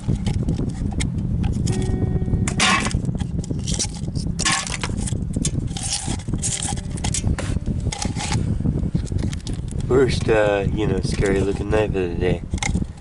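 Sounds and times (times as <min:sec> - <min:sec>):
steady low rumble: 0:00.0 - 0:13.0
scrap metal scraping on a magnet: 0:01.7 - 0:07.3.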